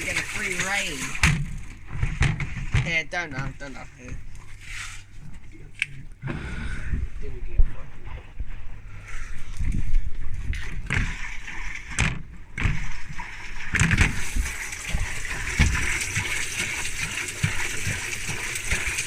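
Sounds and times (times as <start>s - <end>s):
water spraying and splashing: 0.0s - 2.8s, 9.8s - 19.0s
washing machine thumps and knocks: 0.0s - 3.6s, 12.0s - 12.8s, 13.7s - 19.0s.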